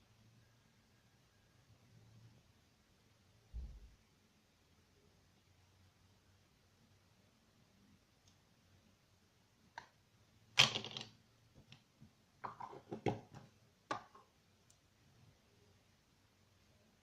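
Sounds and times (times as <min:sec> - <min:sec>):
small objects clicking and knocking: 0:09.7 - 0:14.3.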